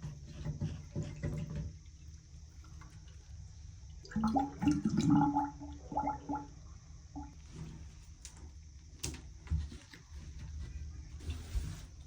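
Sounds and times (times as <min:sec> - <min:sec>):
water gurgling in a drain: 0:03.8 - 0:07.4.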